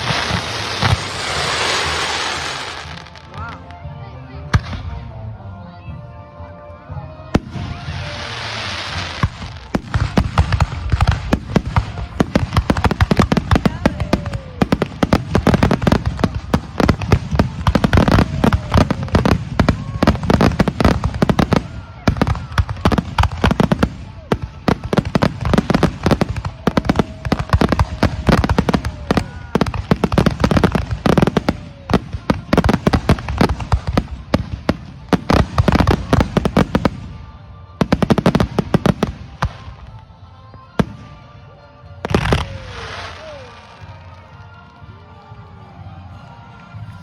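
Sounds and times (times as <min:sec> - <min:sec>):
fireworks bangs: 0:00.0 - 0:03.4, 0:07.4 - 0:39.8
hissing crackle of fireworks: 0:00.0 - 0:03.8, 0:07.4 - 0:47.0.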